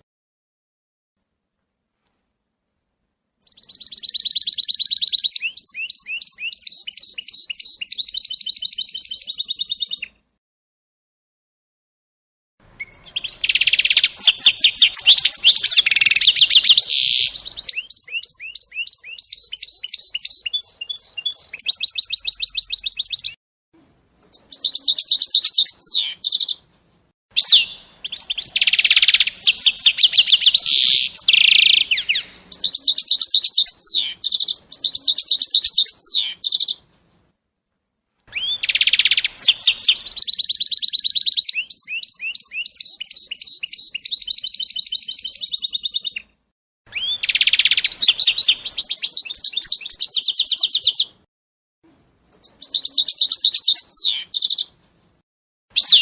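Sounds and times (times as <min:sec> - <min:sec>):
songbird trilling: 0:03.4 - 0:10.1, 0:12.8 - 0:23.4, 0:24.2 - 0:26.6, 0:27.4 - 0:36.8, 0:38.4 - 0:46.3, 0:46.9 - 0:51.1, 0:52.3 - 0:54.7.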